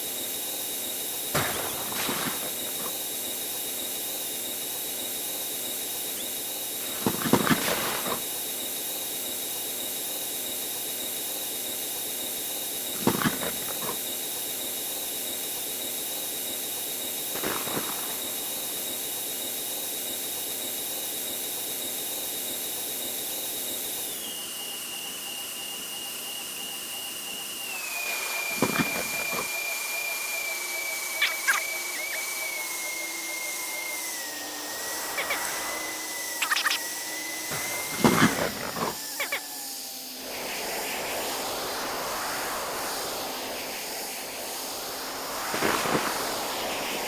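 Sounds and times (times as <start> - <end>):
jet engine whine: 0.0 - 47.0
airplane cabin noise: 1.2 - 4.6, 6.1 - 8.4, 12.8 - 14.6, 17.3 - 18.9, 23.5 - 39.6, 40.2 - 47.0.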